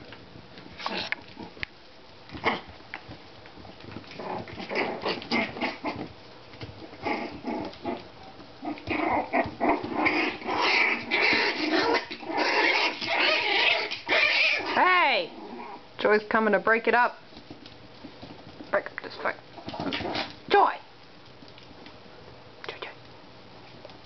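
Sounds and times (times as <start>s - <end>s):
puppies growling and yipping: 0.6s - 1.6s, 2.3s - 2.8s, 3.5s - 16.0s, 19.5s - 20.5s.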